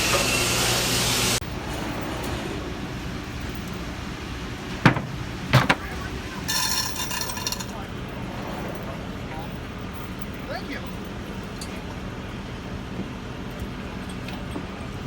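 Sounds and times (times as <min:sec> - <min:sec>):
heavy vehicle engine running: 0:00.0 - 0:15.0
sharp knocks: 0:04.8 - 0:05.9.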